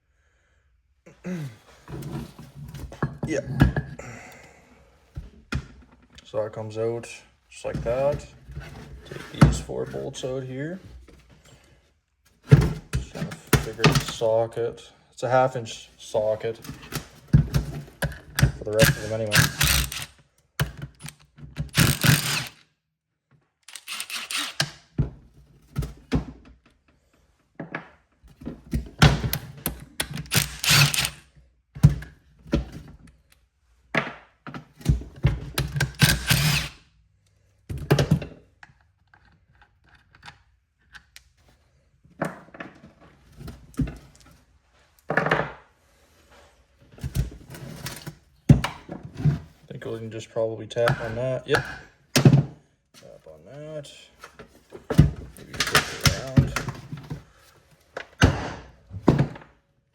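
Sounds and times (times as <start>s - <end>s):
hand ratchet clicking: 18.8s - 20.2s, 21.0s - 22.6s, 23.6s - 24.8s, 30.1s - 31.2s, 36.0s - 36.8s.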